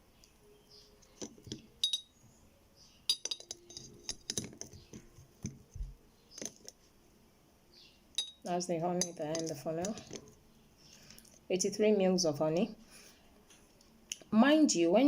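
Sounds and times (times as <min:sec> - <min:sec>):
glassware and utensils clinking: 0:01.2 - 0:02.2, 0:03.1 - 0:05.0, 0:08.2 - 0:10.4.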